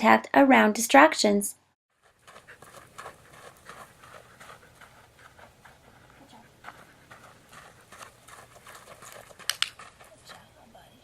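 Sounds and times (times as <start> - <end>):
dog's paws on floor: 2.0 - 10.4.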